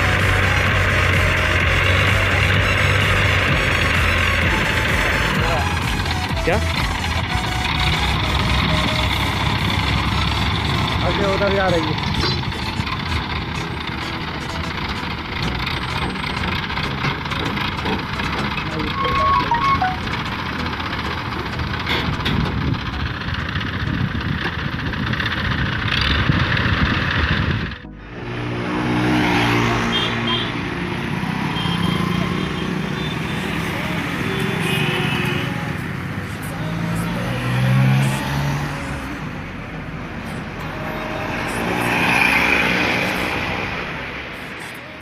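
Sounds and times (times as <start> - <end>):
construction machine engine rumbling: 0.0 - 34.6
vehicle passing by: 25.0 - 34.3.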